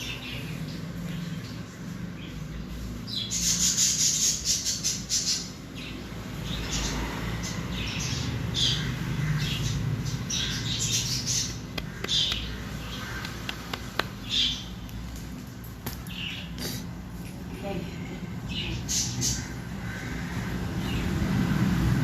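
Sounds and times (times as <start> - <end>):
baby parrot chirping and squawking: 6.6 - 14.8, 18.5 - 21.2.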